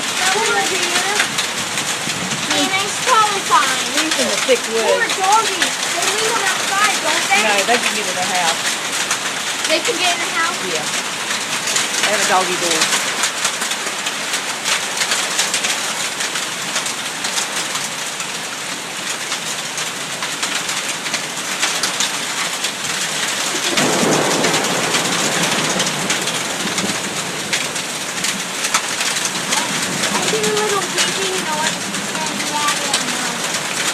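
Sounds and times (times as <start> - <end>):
thunder rumble: 0.0 - 4.7, 22.7 - 33.9
heavy rain pouring: 0.0 - 33.9.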